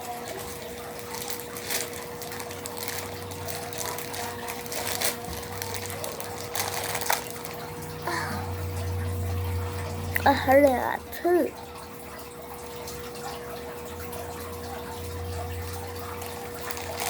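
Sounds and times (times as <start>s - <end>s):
plastic packaging crinkling: 0.0s - 7.9s, 15.6s - 17.0s
steady background hum: 0.0s - 17.0s.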